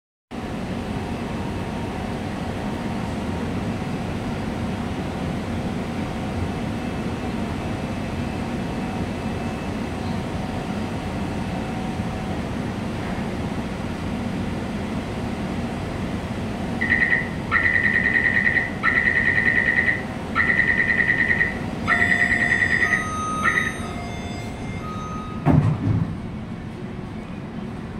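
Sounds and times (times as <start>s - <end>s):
metro train humming: 0.3s - 27.9s
rapid trilling electronic beep: 16.8s - 25.4s.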